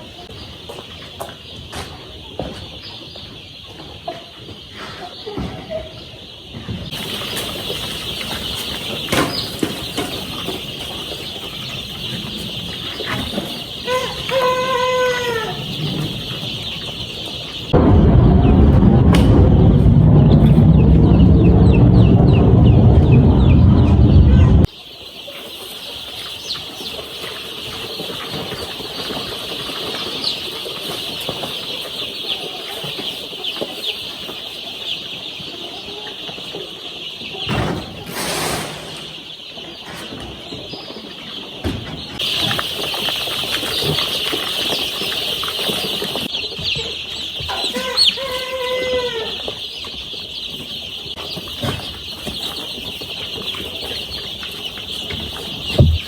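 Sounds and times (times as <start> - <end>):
baby chicks peeping: 0.0 - 56.0
loud low sound: 17.7 - 24.7.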